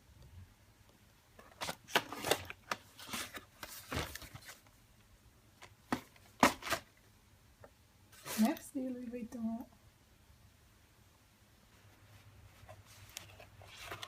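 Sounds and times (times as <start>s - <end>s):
packaging rustling and crinkling: 1.4s - 4.8s, 12.6s - 14.0s.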